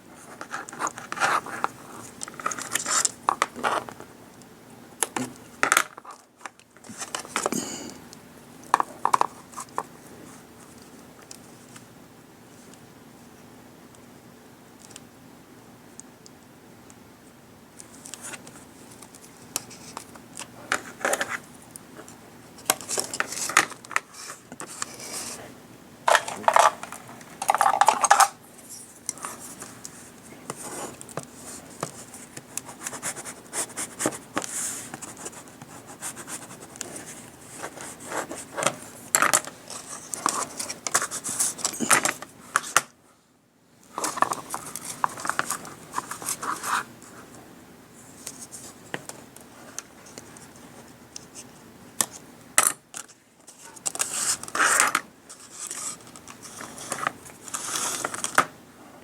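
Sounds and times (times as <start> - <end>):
rubbing and rustling: 0.1 - 4.1, 17.9 - 42.8, 43.9 - 47.4, 53.4 - 58.5.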